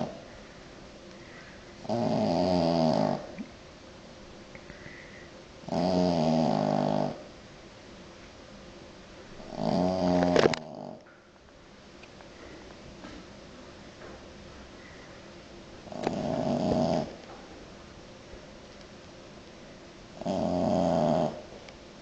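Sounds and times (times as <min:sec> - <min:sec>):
dog snoring loudly: 0:00.0 - 0:00.2, 0:01.8 - 0:03.4, 0:05.6 - 0:07.3, 0:09.4 - 0:11.0, 0:15.8 - 0:17.2, 0:20.2 - 0:21.5.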